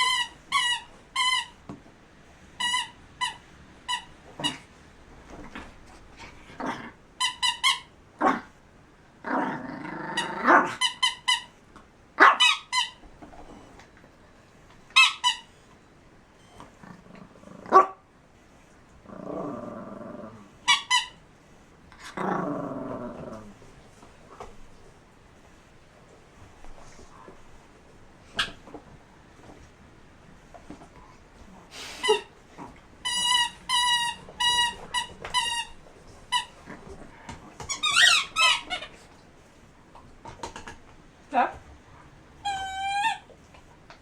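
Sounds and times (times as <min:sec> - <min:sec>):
squeaky rubber toy: 0:00.0 - 0:01.6, 0:02.6 - 0:04.7, 0:07.2 - 0:07.9, 0:10.2 - 0:11.5, 0:12.4 - 0:13.0, 0:15.0 - 0:15.6, 0:20.7 - 0:21.2, 0:33.0 - 0:36.6, 0:37.6 - 0:38.9, 0:42.4 - 0:43.2
dog growling: 0:06.2 - 0:07.0, 0:09.2 - 0:10.8, 0:16.8 - 0:17.9, 0:19.0 - 0:20.6, 0:22.0 - 0:23.7.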